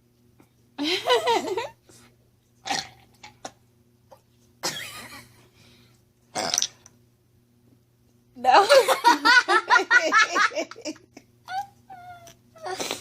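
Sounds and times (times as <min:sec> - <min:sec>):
person burping: 0:02.6 - 0:03.1, 0:06.4 - 0:06.8.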